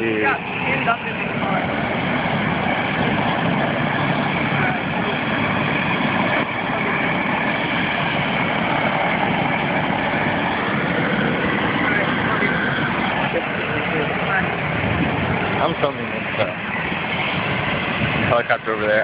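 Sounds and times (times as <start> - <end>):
helicopter engine and rotor: 0.0 - 19.0.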